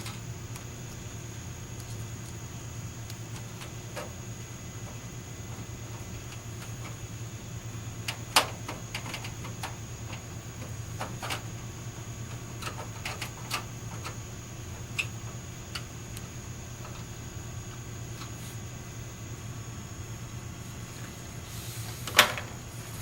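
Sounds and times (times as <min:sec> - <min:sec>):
faint high whine: 0:00.0 - 0:23.0
steady low hum: 0:00.0 - 0:23.0
small hard parts clicking: 0:12.3 - 0:14.2.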